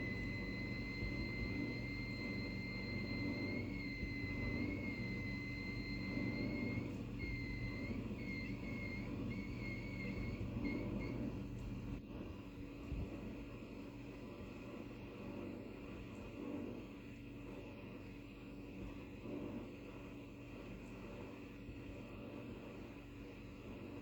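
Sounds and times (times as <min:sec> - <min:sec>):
dishwasher humming: 0:00.0 - 0:12.0.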